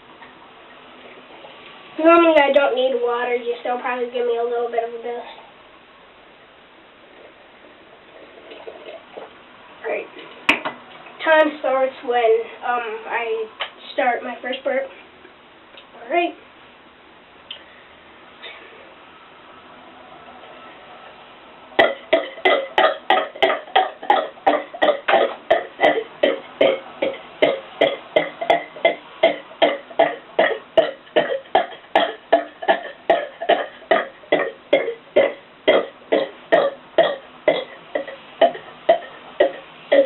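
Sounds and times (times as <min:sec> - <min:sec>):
boy burping: 0:21.8 - 0:40.0.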